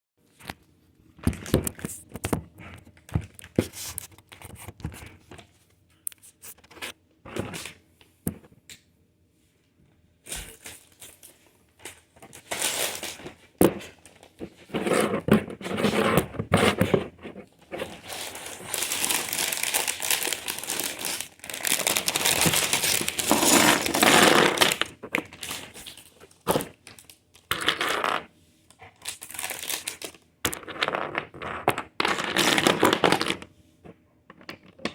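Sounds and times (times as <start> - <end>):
plastic bags crinkling and tearing: 10.3 - 14.5, 17.7 - 27.5, 28.9 - 30.2.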